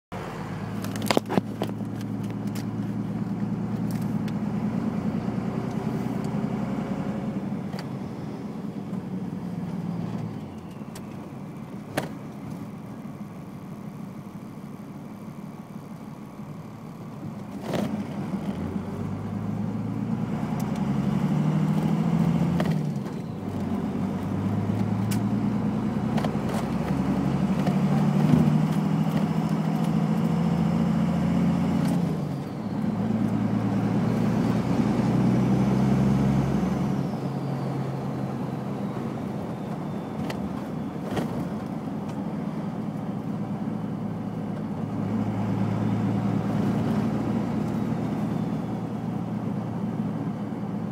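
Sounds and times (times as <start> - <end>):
diesel engine accelerating: 0.1 - 50.9
turbo whistling: 37.0 - 41.2.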